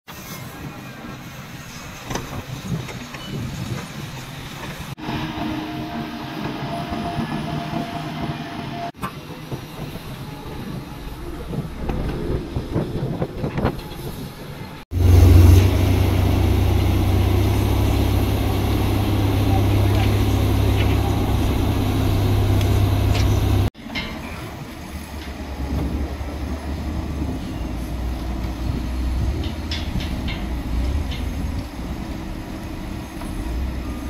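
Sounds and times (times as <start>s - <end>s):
heavy machinery engine rumble: 0.5s - 34.0s
metallic clanking and rattling: 29.3s - 31.6s.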